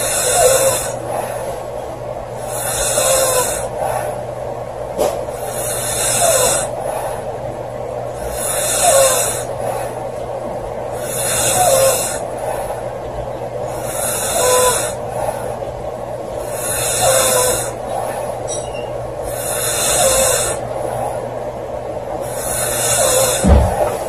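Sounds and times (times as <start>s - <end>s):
woman snoring: 0.0s - 1.0s, 2.4s - 3.7s, 5.4s - 6.7s, 8.2s - 9.5s, 11.0s - 12.2s, 13.8s - 15.0s, 16.4s - 17.8s, 19.3s - 20.6s, 22.3s - 23.8s.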